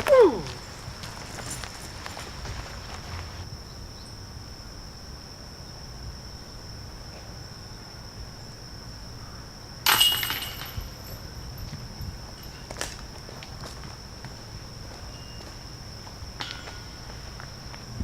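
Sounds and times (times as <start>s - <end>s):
high-pitched insect drone: 2.5s - 18.0s.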